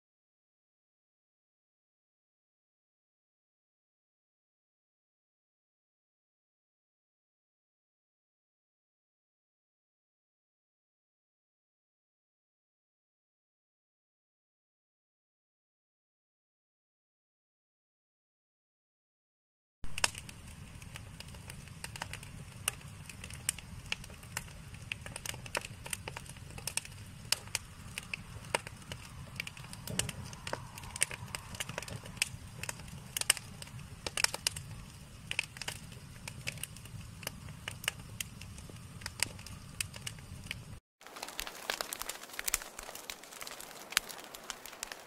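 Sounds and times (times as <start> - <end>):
fire rumbling: 19.8 - 45.0
wood fire crackling and popping: 19.8 - 45.0.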